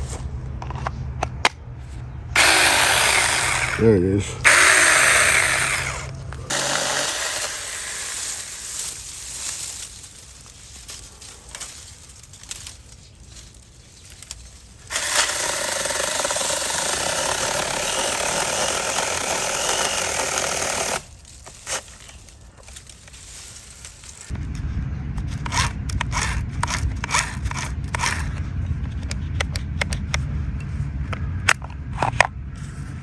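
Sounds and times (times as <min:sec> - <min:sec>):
electric chainsaw running: 0:02.4 - 0:09.1, 0:14.9 - 0:21.1, 0:25.5 - 0:28.4
quiet crackling: 0:06.0 - 0:17.0, 0:18.0 - 0:24.6.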